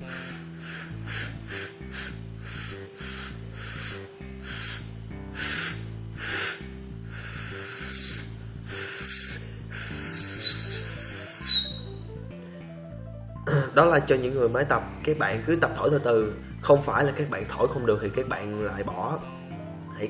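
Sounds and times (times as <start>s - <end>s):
breathy puffs through teeth: 0.0s - 10.0s
thin wavering high whistle: 0.0s - 12.0s
soft background music: 0.0s - 20.0s.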